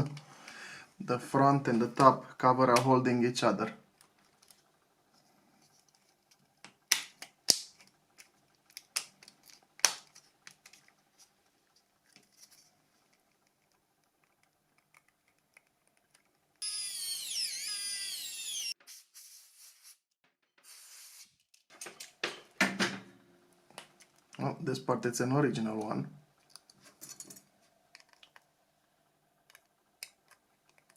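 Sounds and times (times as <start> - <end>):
plastic parts clicking and snapping: 6.3 - 11.0, 26.4 - 28.4, 29.4 - 30.9.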